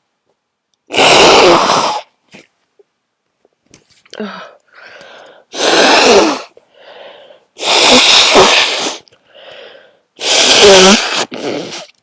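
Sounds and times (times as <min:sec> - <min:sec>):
gasping breath in: 0:04.2 - 0:05.6, 0:06.7 - 0:07.5, 0:09.2 - 0:10.1
person sneezing: 0:05.5 - 0:06.6, 0:07.6 - 0:09.1, 0:10.2 - 0:11.9.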